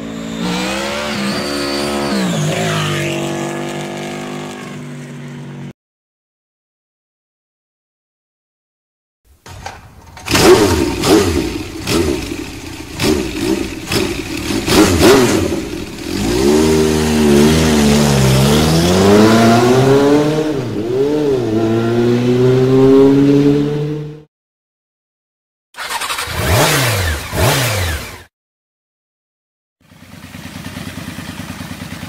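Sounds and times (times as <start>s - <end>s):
motorcycle engine revving: 0.0s - 5.7s, 9.5s - 24.3s, 25.8s - 28.3s, 29.8s - 32.0s
engine sharp cracks: 9.3s - 16.1s.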